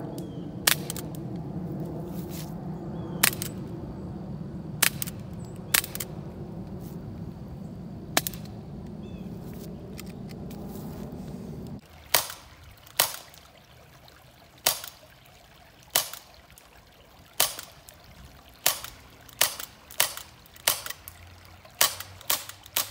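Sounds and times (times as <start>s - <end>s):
airsoft pistol firing: 4.8s - 6.1s, 18.6s - 21.0s.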